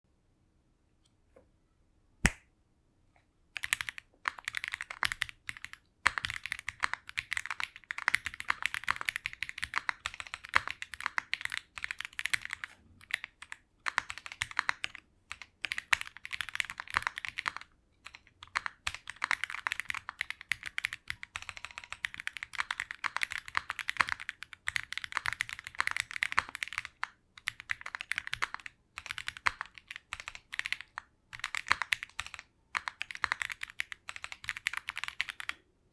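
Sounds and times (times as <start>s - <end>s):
mechanical keyboard typing: 3.6s - 35.6s.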